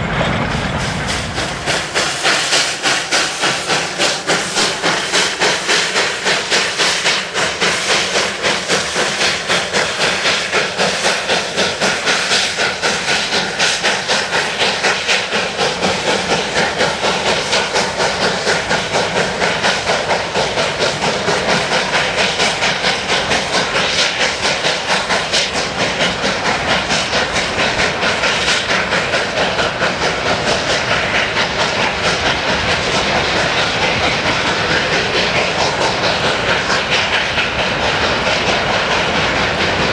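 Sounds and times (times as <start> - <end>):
steam hissing: 0.0 - 39.9
steam locomotive exhaust chuffing: 0.0 - 39.9.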